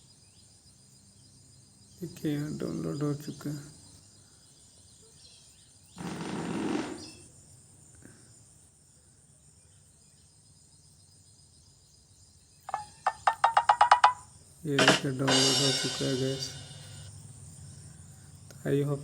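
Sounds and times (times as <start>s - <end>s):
steady high hiss: 14.7s - 17.2s.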